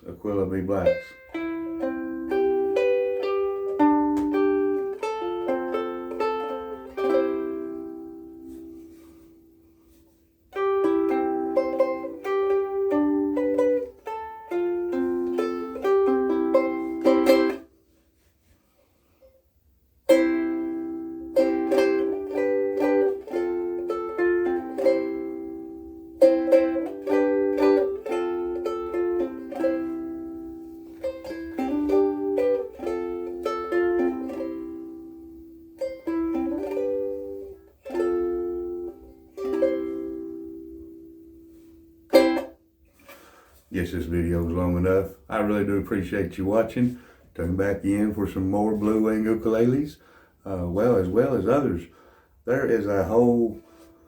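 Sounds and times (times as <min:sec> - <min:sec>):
ukulele playing: 0:00.3 - 0:18.3, 0:20.0 - 0:46.6.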